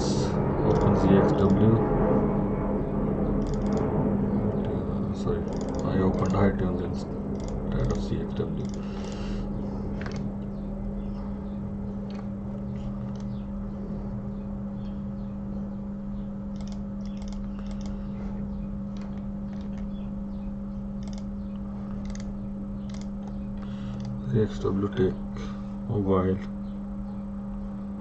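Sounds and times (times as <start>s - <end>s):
steady low hum: 0.0s - 28.0s
keyboard and mouse clicks: 3.4s - 3.8s, 5.5s - 6.4s, 10.0s - 10.2s, 12.1s - 13.4s, 16.6s - 18.0s, 18.9s - 19.9s, 21.0s - 21.3s, 22.0s - 24.2s.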